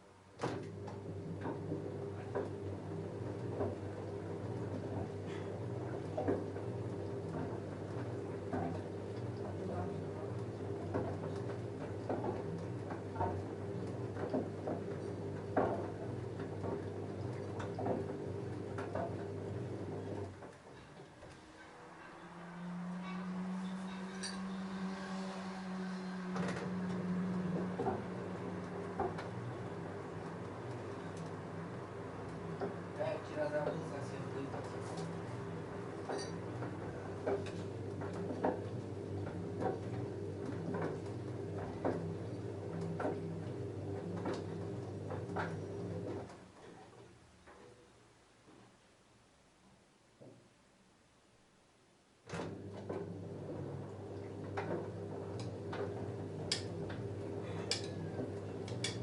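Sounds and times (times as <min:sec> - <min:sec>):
washing machine motor hum: 0:00.0 - 0:47.3, 0:52.2 - 0:59.0
clothes knocking in washer drum: 0:00.4 - 0:09.8, 0:10.6 - 0:19.2, 0:26.6 - 0:33.0, 0:35.6 - 0:46.3.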